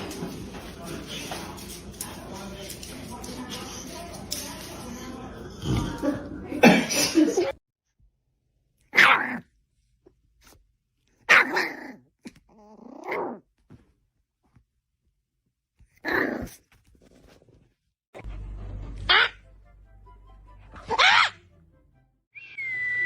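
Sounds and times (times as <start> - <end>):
dog barking: 8.9 - 9.4, 11.3 - 11.8, 19.1 - 19.4, 20.8 - 21.4.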